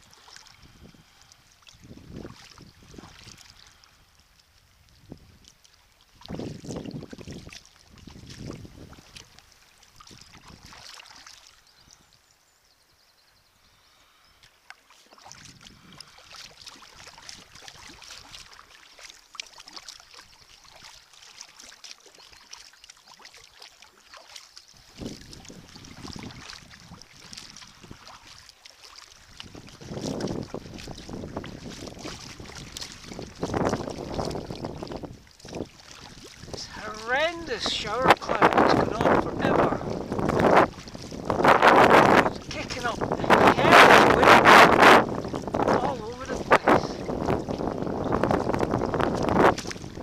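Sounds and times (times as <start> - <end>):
wind buffeting microphone: 0.0 - 1.2, 1.8 - 3.8, 4.7 - 5.5, 6.2 - 9.4, 15.4 - 18.3, 24.8 - 28.3, 29.2 - 50.0.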